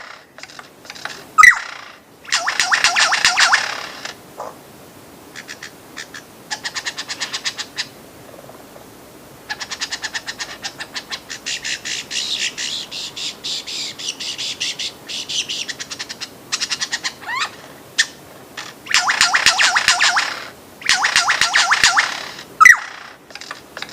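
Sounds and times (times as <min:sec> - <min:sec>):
bird clicking trills: 0:00.0 - 0:04.1, 0:18.9 - 0:23.9
bird rising whistle: 0:18.9 - 0:23.0.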